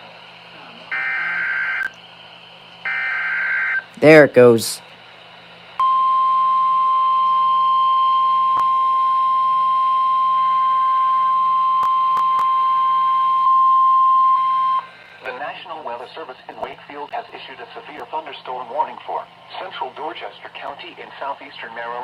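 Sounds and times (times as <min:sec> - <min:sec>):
steady high warning beep: 0:05.8 - 0:14.9.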